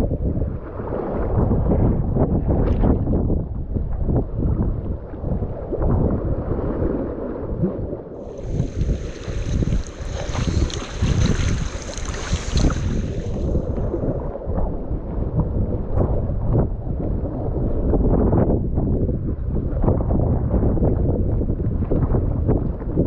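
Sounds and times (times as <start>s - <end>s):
wind buffeting microphone: 0.0s - 23.0s
hissing rush: 8.2s - 13.8s
water sloshing around kayak: 8.2s - 14.1s.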